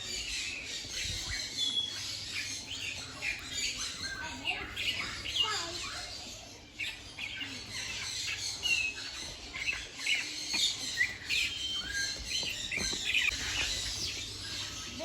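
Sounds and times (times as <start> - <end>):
birds chirping and whistling: 0.0 - 15.0.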